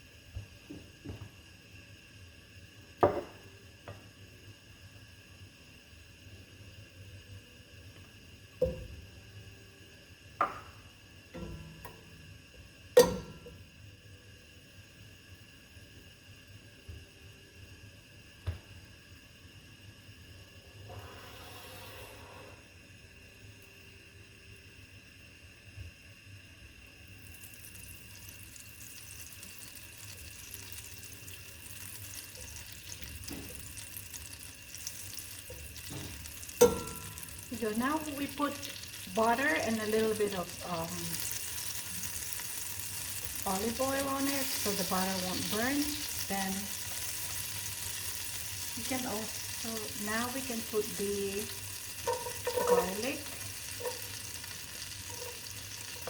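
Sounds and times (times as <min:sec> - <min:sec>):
butter and oil sizzling in a pan: 0:26.8 - 0:56.0
pots and dishes knocking: 0:35.9 - 0:37.2, 0:52.0 - 0:53.0.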